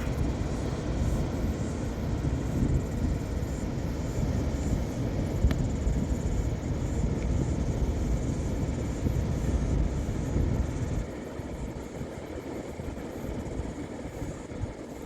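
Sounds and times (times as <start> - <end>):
wind buffeting microphone: 0.0 - 14.9.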